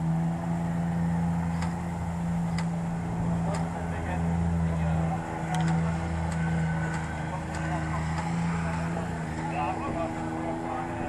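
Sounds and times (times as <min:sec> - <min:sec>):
low engine drone: 0:00.0 - 0:11.0.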